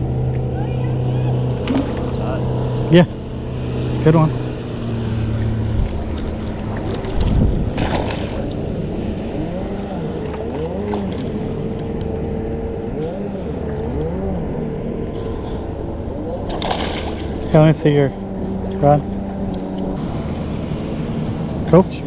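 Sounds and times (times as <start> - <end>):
motorboat engine running: 0.0 - 22.0
wind noise on microphone: 5.4 - 8.6.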